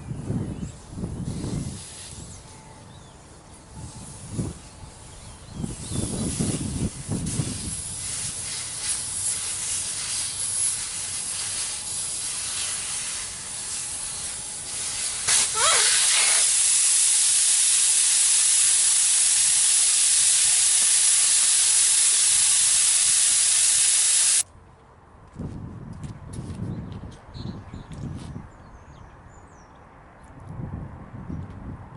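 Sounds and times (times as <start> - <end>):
compressed air hissing: 1.2 - 2.5, 3.8 - 24.4.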